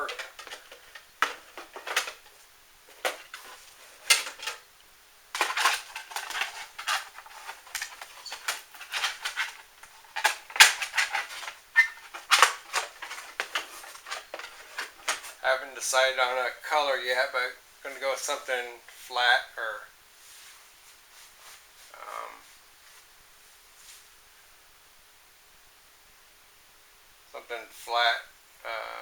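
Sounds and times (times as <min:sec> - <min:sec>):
plastic parts clacking and rattling: 0:00.0 - 0:04.7, 0:05.3 - 0:15.4
rustling: 0:00.0 - 0:04.7, 0:05.3 - 0:16.1, 0:20.2 - 0:24.4.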